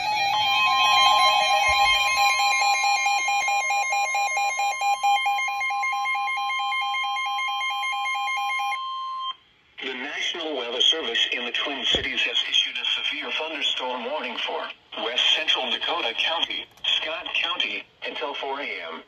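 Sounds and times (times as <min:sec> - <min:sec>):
steady high alarm tone: 0:00.0 - 0:09.4.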